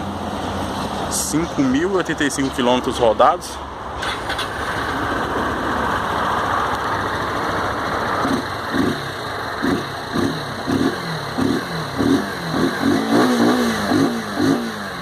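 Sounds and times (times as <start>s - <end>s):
motorcycle engine idling and revving: 4.0s - 15.0s.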